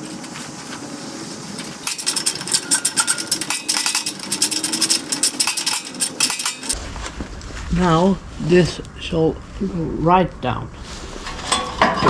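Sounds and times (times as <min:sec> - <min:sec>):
metal parts clinking and rattling: 0:00.0 - 0:06.8.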